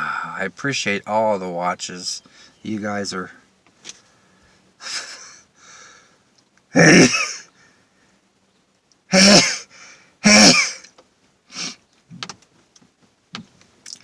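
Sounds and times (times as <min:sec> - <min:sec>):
man sneezing: 0:06.8 - 0:07.5, 0:09.1 - 0:10.9.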